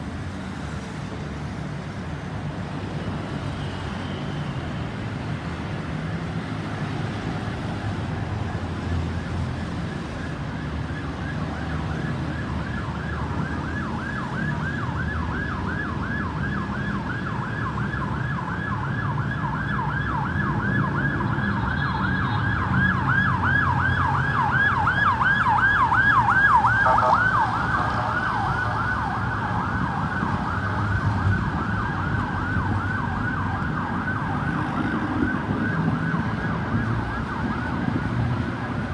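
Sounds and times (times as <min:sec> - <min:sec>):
road traffic noise: 0:00.0 - 0:38.9
ambulance siren yelping: 0:09.2 - 0:38.9
steady siren tone: 0:09.3 - 0:38.9.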